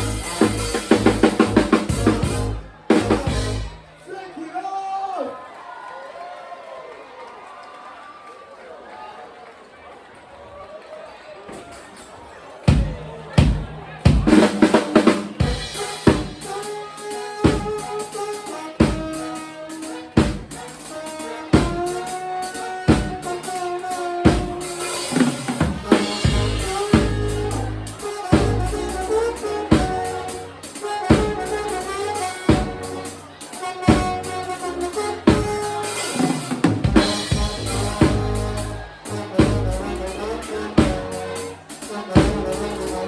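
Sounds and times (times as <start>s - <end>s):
held pitched notes: 0.0s - 3.8s, 15.4s - 43.0s
loud drum hit: 0.0s - 3.8s, 12.7s - 16.6s, 24.3s - 28.8s, 36.5s - 38.6s
live band playing: 0.0s - 4.0s, 12.7s - 43.0s
kick and snare drum hits: 12.7s - 16.4s.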